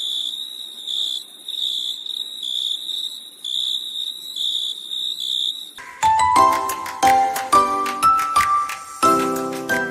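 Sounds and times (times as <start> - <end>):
crickets chirping: 0.0 - 6.0.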